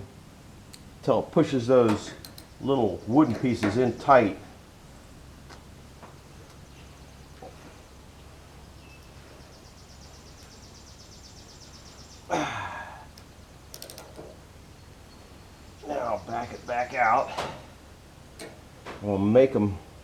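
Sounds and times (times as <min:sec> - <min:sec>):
light clicks: 0:01.9 - 0:02.6, 0:13.1 - 0:14.4.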